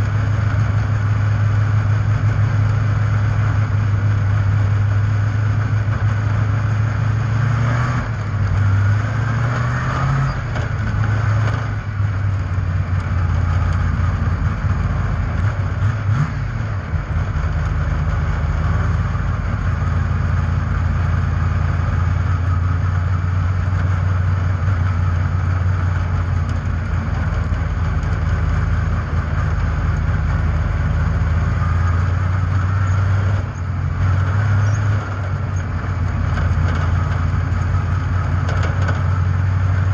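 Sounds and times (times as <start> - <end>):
race car engines running hard: 0.0 - 39.9.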